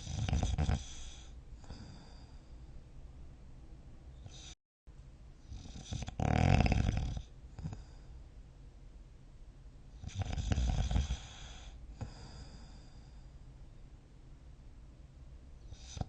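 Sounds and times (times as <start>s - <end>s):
person snoring: 0.0s - 2.4s, 5.5s - 8.1s, 10.0s - 13.0s.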